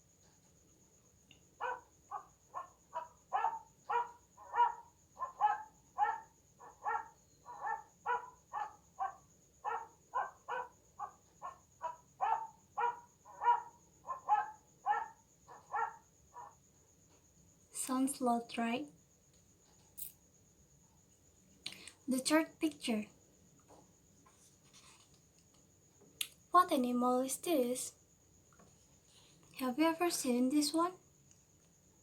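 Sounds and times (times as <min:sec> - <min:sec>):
dog barking loudly: 0:01.6 - 0:16.5.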